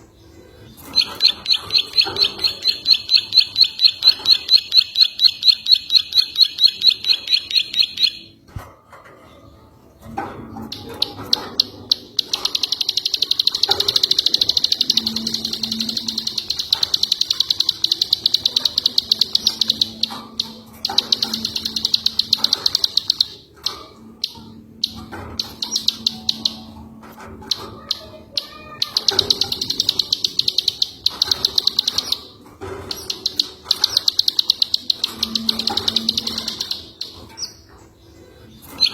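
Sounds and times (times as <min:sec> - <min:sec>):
songbird chattering trill: 0:00.8 - 0:08.3.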